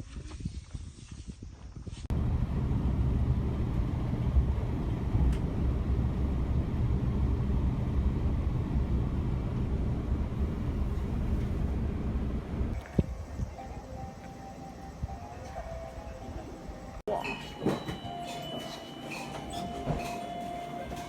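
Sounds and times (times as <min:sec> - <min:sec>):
vehicle engine rumble: 0:02.1 - 0:17.0.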